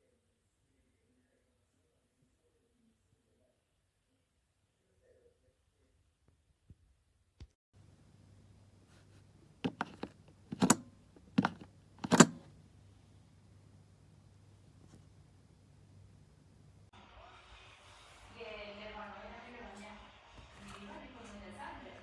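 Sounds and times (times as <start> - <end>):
faint low hum: 7.8 - 16.9
sharp clicks and knocks: 9.6 - 12.6.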